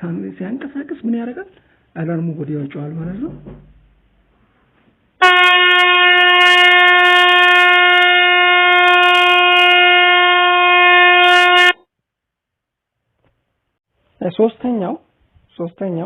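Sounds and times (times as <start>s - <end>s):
phone alarm horn-like tone: 5.2s - 11.8s.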